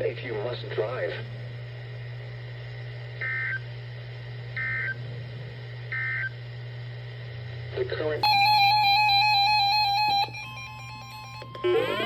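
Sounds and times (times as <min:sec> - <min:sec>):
digital data tone bursts: 0:08.2 - 0:12.0.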